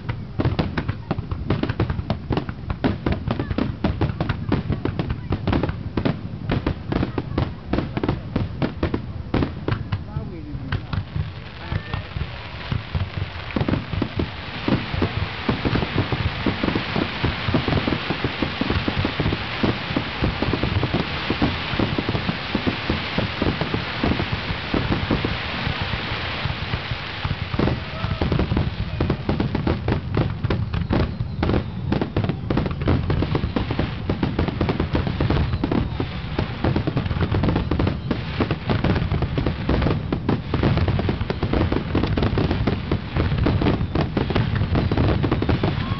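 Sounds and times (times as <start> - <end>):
fireworks bursting and crackling: 0.0 - 45.9
sharp firework bangs: 0.0 - 45.9.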